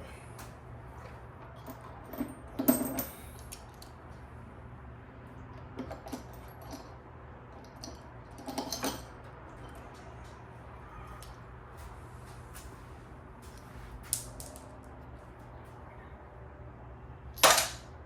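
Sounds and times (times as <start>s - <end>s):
small metal parts clinking: 1.5s - 3.9s, 5.8s - 9.8s, 14.0s - 14.7s, 17.4s - 17.8s.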